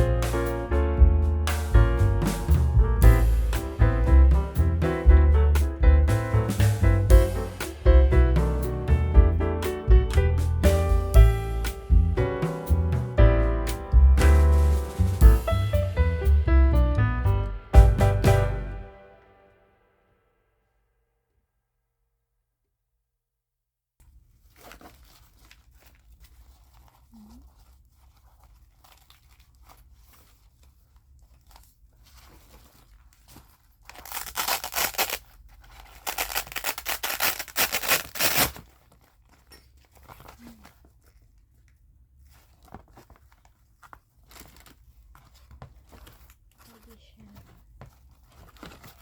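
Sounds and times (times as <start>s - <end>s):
faint rustling and handling: 24.0s - 49.0s
loud ripping: 24.4s - 40.8s.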